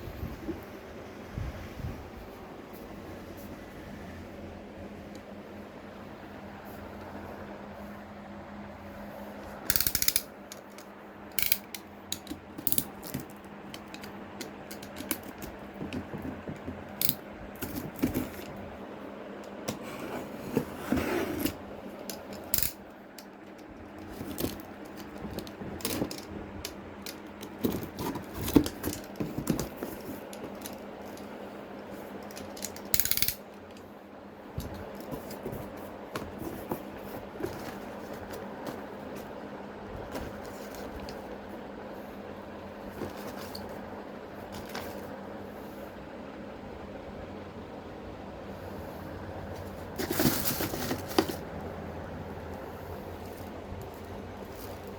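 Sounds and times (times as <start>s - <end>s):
plastic parts clicking and rattling: 9.7s - 18.6s, 21.4s - 33.8s, 44.5s - 45.1s, 50.0s - 51.4s.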